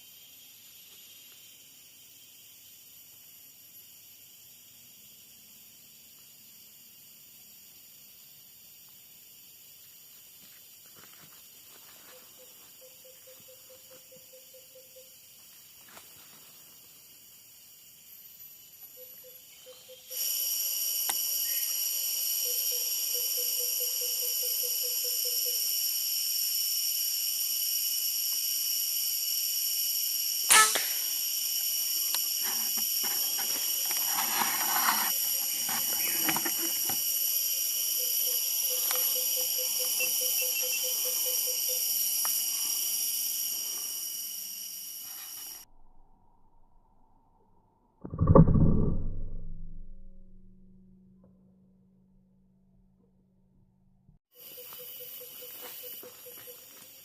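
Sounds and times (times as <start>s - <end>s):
cicadas droning: 0.0s - 48.0s, 54.3s - 57.0s
air rifle shot: 30.5s - 31.1s
rustling: 32.4s - 37.0s.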